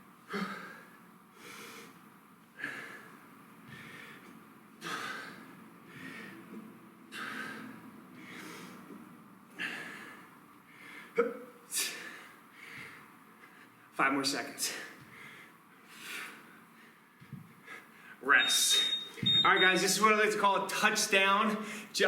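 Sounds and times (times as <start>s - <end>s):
man breathing hard: 0.2s - 13.8s, 14.6s - 18.2s, 21.6s - 21.9s.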